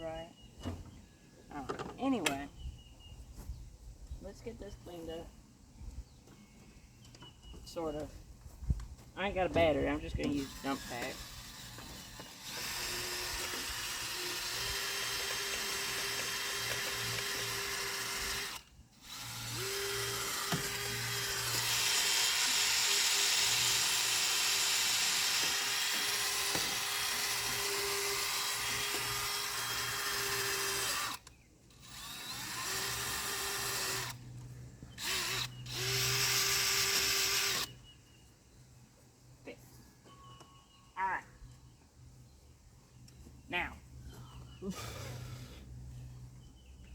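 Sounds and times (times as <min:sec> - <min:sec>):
electric motor whirring: 0:10.2 - 0:34.2, 0:34.9 - 0:37.8.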